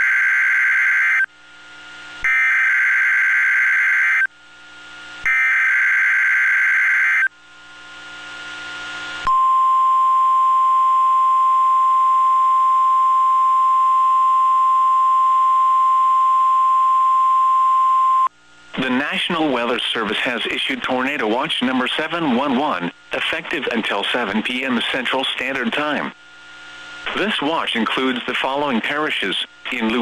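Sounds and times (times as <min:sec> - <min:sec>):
radio hiss: 0:18.7 - 0:30.0.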